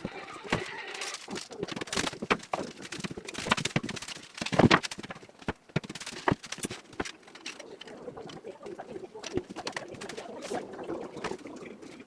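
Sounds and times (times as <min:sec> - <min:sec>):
carpentry knocks and clatter: 0:00.0 - 0:07.6.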